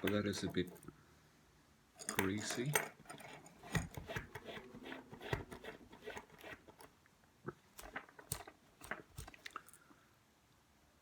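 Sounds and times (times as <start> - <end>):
small parts clicking and scraping: 2.0 - 7.0, 7.8 - 9.9.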